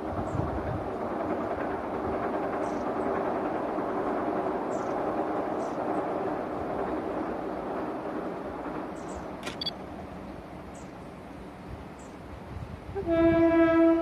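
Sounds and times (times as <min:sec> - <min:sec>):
train horn: 0:12.9 - 0:14.0.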